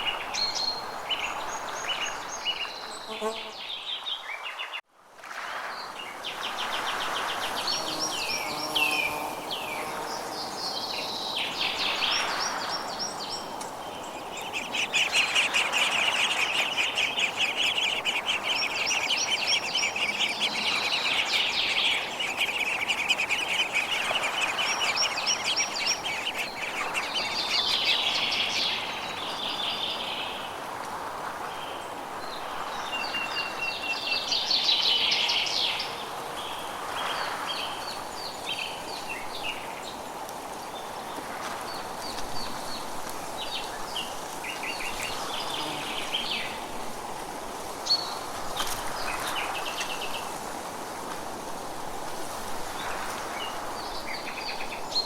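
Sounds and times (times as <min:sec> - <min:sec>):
background hiss: 0:05.4 - 0:55.0
birds chirping and trilling: 0:07.6 - 0:30.1.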